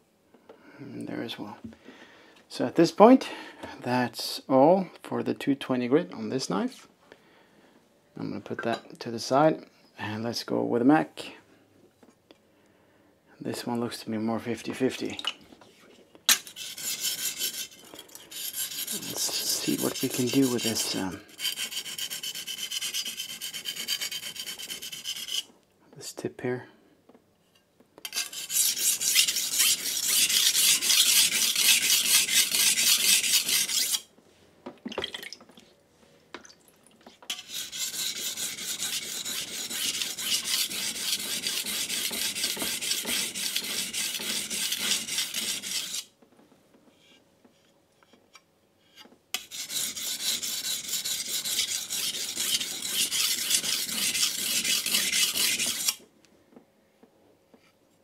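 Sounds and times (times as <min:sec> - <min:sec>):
knife scraping on whetstone: 0:15.7 - 0:25.5, 0:28.0 - 0:34.1, 0:37.2 - 0:46.1, 0:49.4 - 0:56.0.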